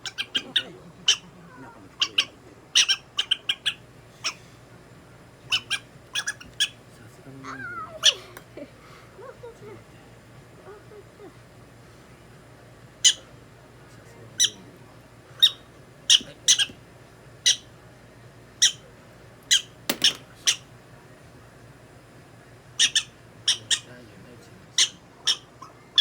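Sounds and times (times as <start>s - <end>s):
prairie dog squeaking: 0.0s - 4.4s, 5.5s - 6.8s, 13.0s - 13.2s, 15.4s - 16.8s, 17.4s - 17.7s, 18.6s - 18.8s, 19.5s - 20.7s, 22.8s - 23.9s, 24.8s - 26.0s.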